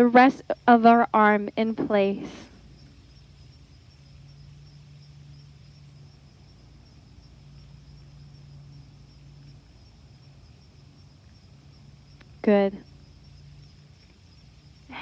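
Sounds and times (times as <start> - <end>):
high insect trill: 0.0 - 15.0
soft hiss: 0.0 - 15.0.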